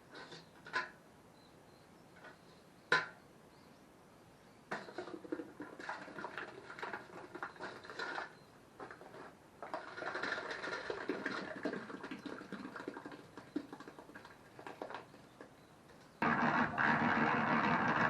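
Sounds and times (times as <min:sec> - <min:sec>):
hand tool scraping rough material: 0:16.2 - 0:18.0.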